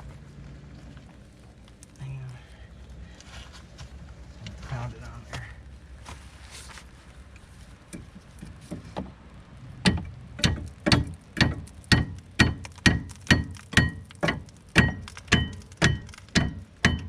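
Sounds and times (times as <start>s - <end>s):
hammer striking metal with ringing: 9.9s - 17.0s.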